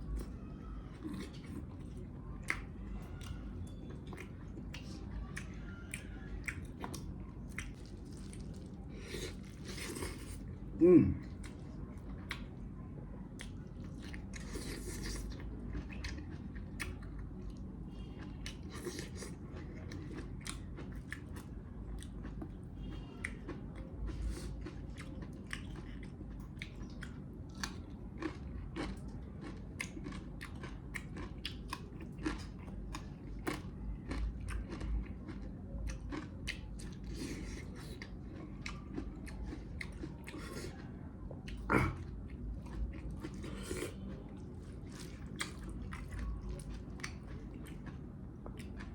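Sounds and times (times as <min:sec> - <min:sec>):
person chewing and biting: 0:04.1 - 0:10.5, 0:18.4 - 0:22.5, 0:24.1 - 0:40.8, 0:41.5 - 0:48.9.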